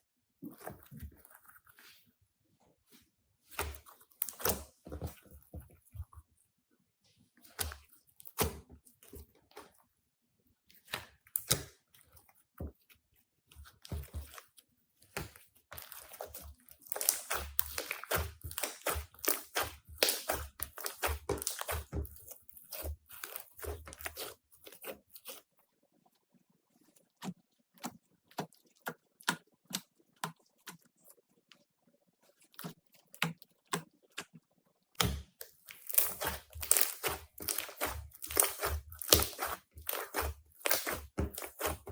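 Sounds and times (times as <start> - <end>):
slime squelching and crackling: 3.5 - 5.2, 13.5 - 25.5, 35.0 - 41.9.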